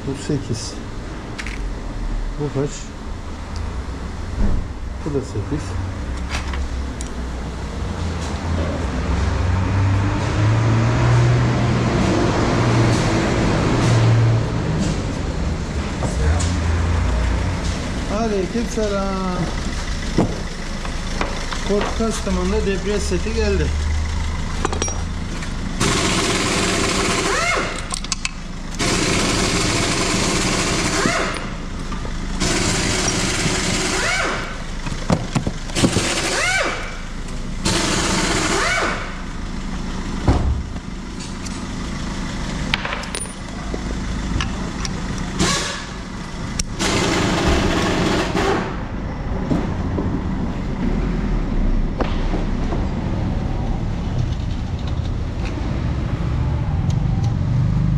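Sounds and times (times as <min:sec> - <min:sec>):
pneumatic air tool bursts: 0:25.8 - 0:28.1, 0:28.8 - 0:31.5, 0:32.4 - 0:34.6, 0:35.8 - 0:37.0, 0:37.6 - 0:39.2, 0:45.4 - 0:46.0.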